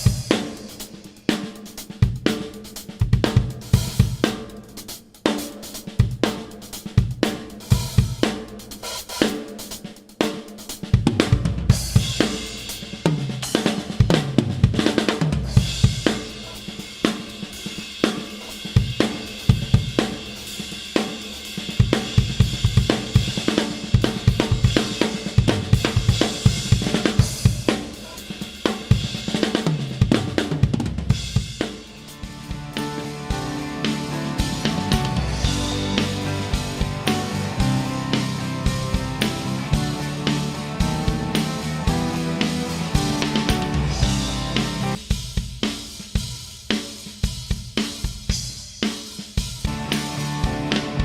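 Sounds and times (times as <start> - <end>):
drum kit playing: 0.0 - 51.0
cymbals crashing: 31.3 - 45.2.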